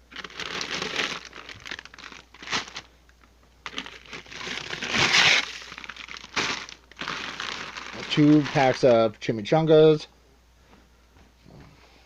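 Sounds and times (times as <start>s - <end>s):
packaging crinkling and rustling: 0.0s - 9.2s.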